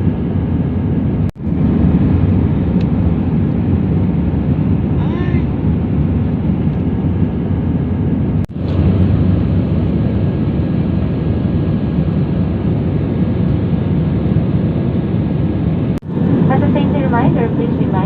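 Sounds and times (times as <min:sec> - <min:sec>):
rushing air: 0:00.0 - 0:17.1
airliner cabin drone: 0:00.0 - 0:18.0
jet engines: 0:00.0 - 0:18.0.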